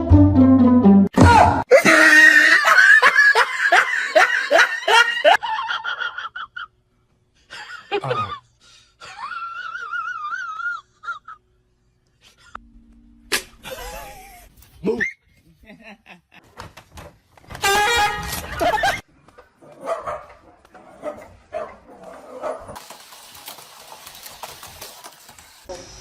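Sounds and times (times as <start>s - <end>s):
bouncy music: 0.0s - 1.4s, 17.5s - 19.0s
person laughing hard: 1.7s - 6.7s, 7.5s - 11.4s, 13.6s - 14.6s, 18.4s - 19.0s.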